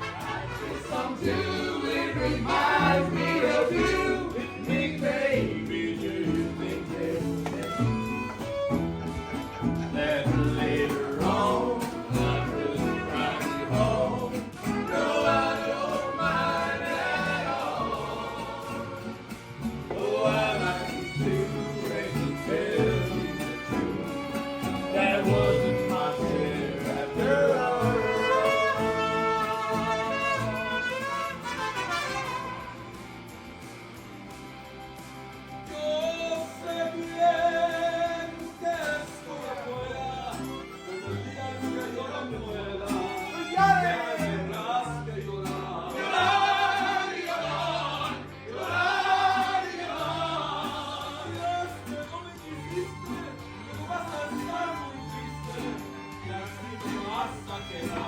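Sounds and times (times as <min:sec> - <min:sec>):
song with sung vocals: 0:00.0 - 0:32.8, 0:35.3 - 0:58.0
guitar: 0:00.0 - 0:58.0
person singing: 0:00.7 - 0:08.4, 0:09.6 - 0:19.1, 0:19.9 - 0:31.5, 0:35.7 - 0:58.0
fiddle: 0:07.4 - 0:10.8, 0:19.5 - 0:33.7, 0:37.6 - 0:45.0, 0:50.8 - 0:58.0.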